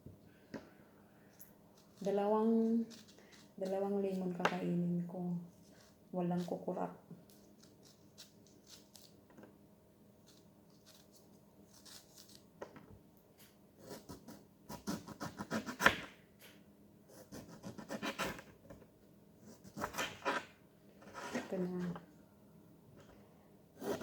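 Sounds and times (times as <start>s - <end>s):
lemon rind scratching and tearing: 1.8s - 4.2s, 7.3s - 9.2s, 10.2s - 12.4s.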